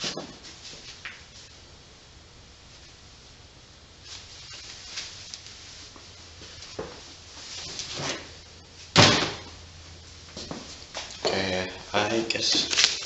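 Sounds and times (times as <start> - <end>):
soft rustles and knocks: 5.0 - 8.3.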